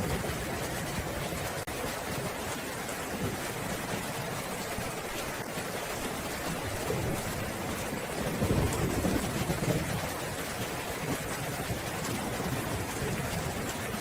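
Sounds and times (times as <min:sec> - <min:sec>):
steady rain falling: 0:00.0 - 0:14.0
low roll of thunder: 0:06.8 - 0:14.0.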